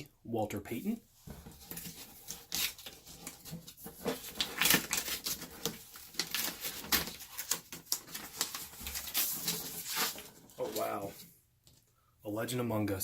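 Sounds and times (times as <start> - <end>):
packaging crinkling and rustling: 1.5 - 11.2.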